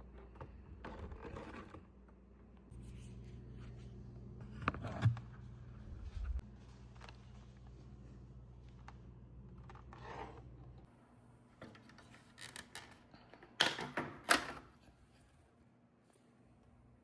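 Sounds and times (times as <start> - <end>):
faint low hum: 0.0 - 12.2.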